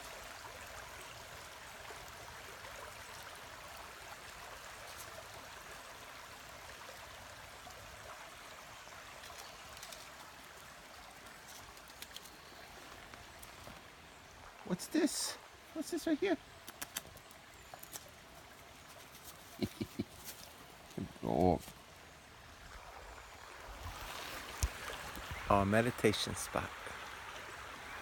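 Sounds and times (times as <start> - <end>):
flowing river water: 0.0 - 28.0
faint clicks: 11.5 - 13.6, 16.6 - 18.1.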